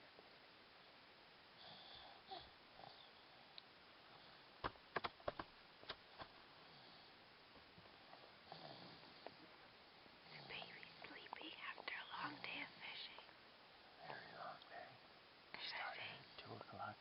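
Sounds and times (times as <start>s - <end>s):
faint breaths and sniffs: 10.2s - 15.0s.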